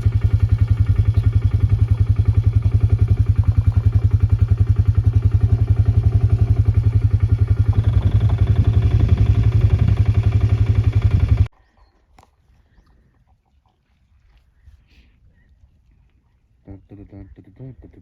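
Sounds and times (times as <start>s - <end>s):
vehicle engine running: 0.0s - 11.5s.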